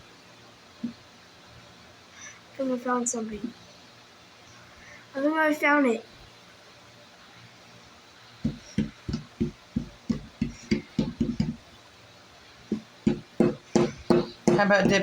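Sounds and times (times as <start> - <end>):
small hammer tapping on plaster: 8.5 - 11.6, 12.7 - 15.0.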